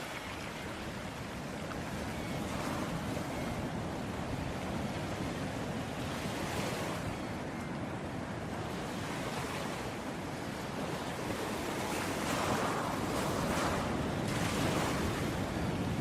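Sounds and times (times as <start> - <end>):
ocean waves washing onto beach: 0.0 - 16.0.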